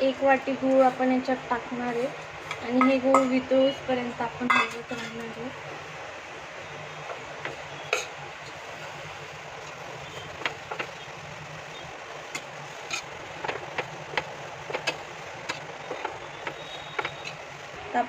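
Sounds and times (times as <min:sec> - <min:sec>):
steady hiss with low hum: 0:00.0 - 0:18.0
metal spoon scraping a pan: 0:12.8 - 0:13.1.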